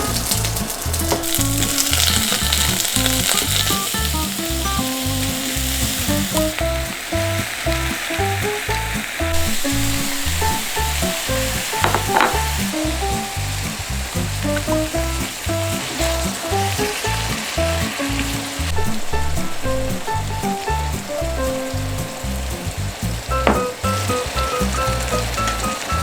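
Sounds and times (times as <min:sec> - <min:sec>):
food sizzling in hot oil: 0:00.0 - 0:26.0
background music with steady beat: 0:06.1 - 0:26.0.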